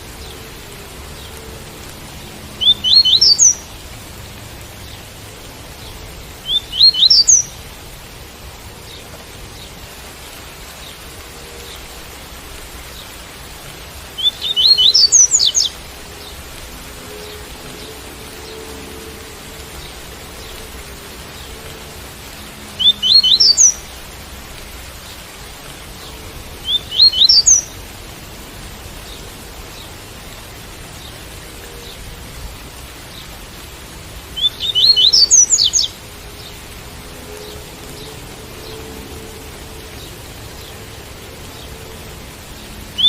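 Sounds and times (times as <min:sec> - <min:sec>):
rain hiss: 0:00.0 - 0:43.0
bird singing upward-sliding notes: 0:02.4 - 0:03.7, 0:05.8 - 0:07.6, 0:13.9 - 0:24.2, 0:26.1 - 0:27.9, 0:34.3 - 0:41.8.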